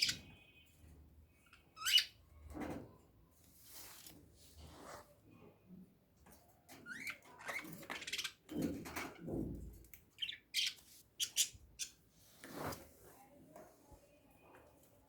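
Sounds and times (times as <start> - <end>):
birds squawking and chirping: 1.5 - 2.2.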